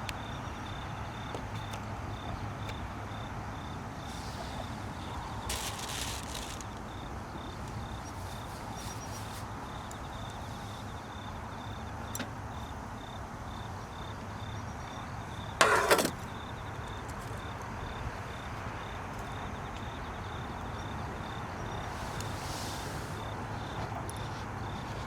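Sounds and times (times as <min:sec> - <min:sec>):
insect chirping: 0:00.0 - 0:25.0
low outdoor background noise: 0:00.0 - 0:25.0
loud rustle or clatter: 0:05.5 - 0:06.8.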